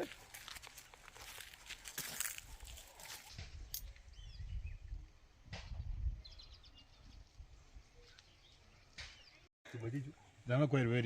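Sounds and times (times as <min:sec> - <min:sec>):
small birds chirping: 0:01.2 - 0:10.6.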